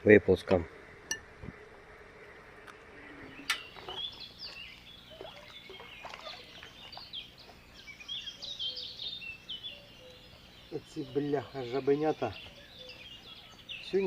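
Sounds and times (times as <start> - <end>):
songbirds chirping: 0.0 - 14.0.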